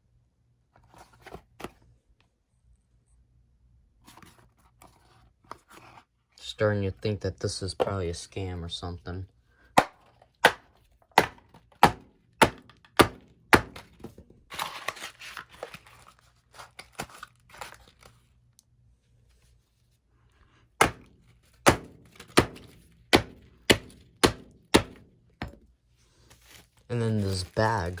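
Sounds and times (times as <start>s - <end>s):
sharp thuds: 20.8s - 25.6s
rustling: 25.4s - 28.0s.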